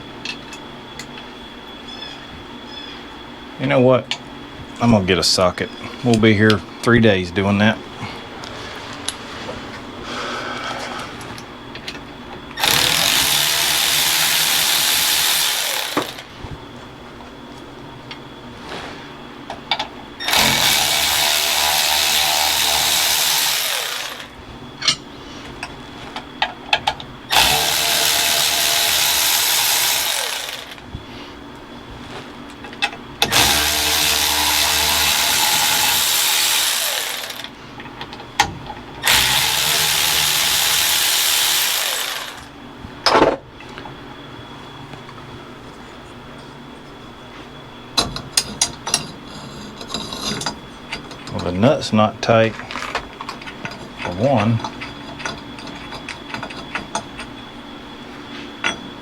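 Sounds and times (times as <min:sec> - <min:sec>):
power tool spinning a socket: 0:12.6 - 0:16.3, 0:20.2 - 0:24.4, 0:27.3 - 0:30.8, 0:33.2 - 0:37.6, 0:39.0 - 0:42.5.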